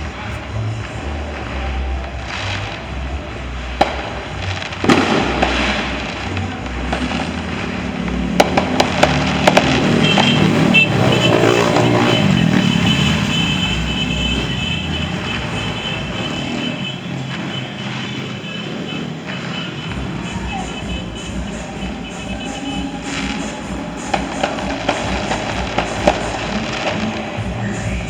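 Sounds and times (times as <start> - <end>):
firecracker cracks: 0.0 - 28.0
firework bangs: 0.0 - 28.0.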